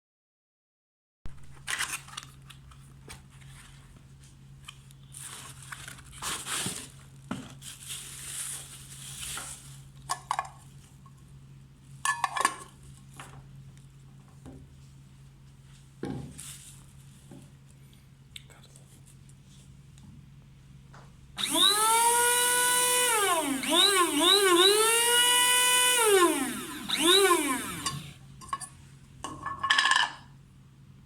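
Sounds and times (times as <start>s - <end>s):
crinkly rustling: 1.6s - 10.0s.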